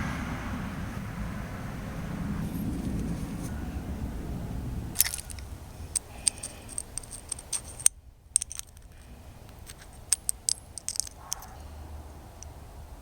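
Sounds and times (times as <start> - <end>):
hand tools clicking and clinking: 5.0 - 11.7.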